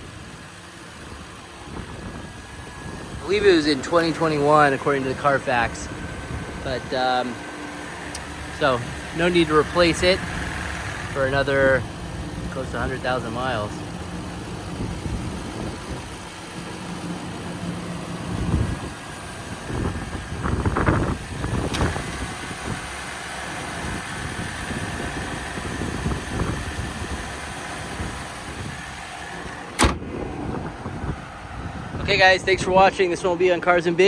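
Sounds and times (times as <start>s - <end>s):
engine idling: 0.0s - 34.0s
sharp bang: 29.8s - 30.8s.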